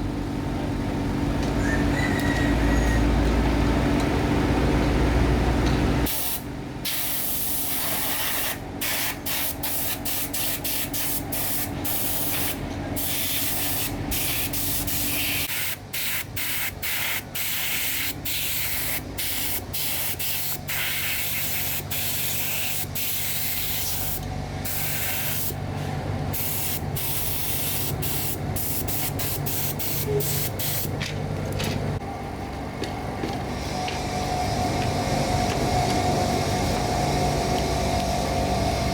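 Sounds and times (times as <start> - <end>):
hissing spray bursts: 6.1 - 25.6, 26.3 - 30.9
steady low hum: 17.9 - 38.9.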